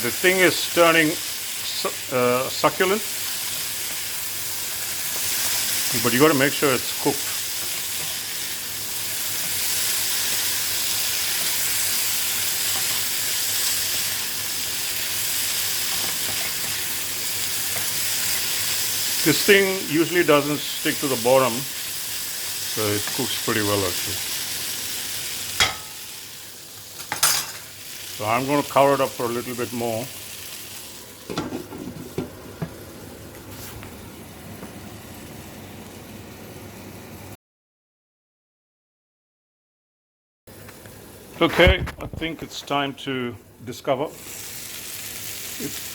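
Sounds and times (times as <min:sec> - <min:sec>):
vegetables sizzling in oil: 0:00.0 - 0:37.3, 0:44.1 - 0:45.9
metal cookware clanks: 0:25.6 - 0:26.0, 0:27.0 - 0:27.7, 0:31.3 - 0:32.3.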